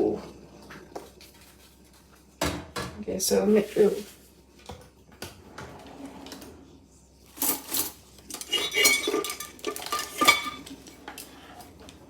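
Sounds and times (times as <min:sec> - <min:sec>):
metal pots clattering: 0:07.4 - 0:11.3.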